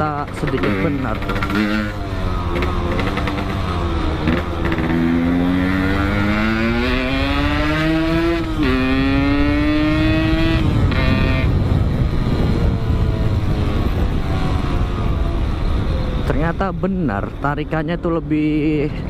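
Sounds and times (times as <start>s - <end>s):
motorcycle engine accelerating: 0.0s - 16.3s
wind rumble on microphone: 5.8s - 19.0s.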